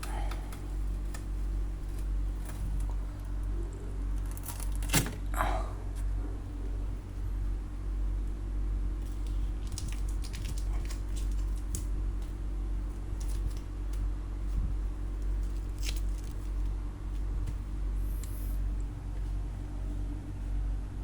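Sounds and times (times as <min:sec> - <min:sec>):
handling clicks and crackles: 0:00.0 - 0:05.3, 0:09.0 - 0:14.1, 0:15.1 - 0:17.6
steady low hum: 0:00.0 - 0:21.0.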